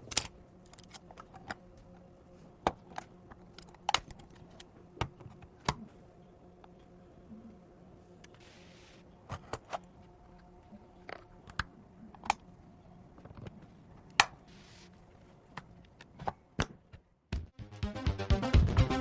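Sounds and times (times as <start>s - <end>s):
faint steady hum: 0.0s - 17.3s.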